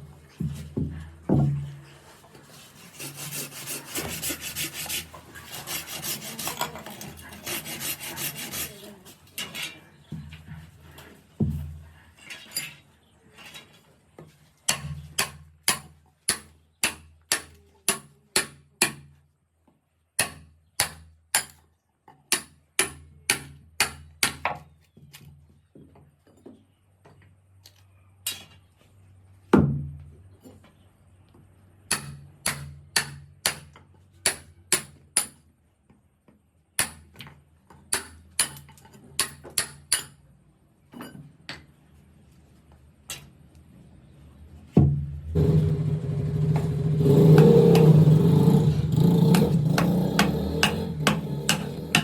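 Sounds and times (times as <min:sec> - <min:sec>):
hand hammer blows: 0:45.4 - 0:52.0.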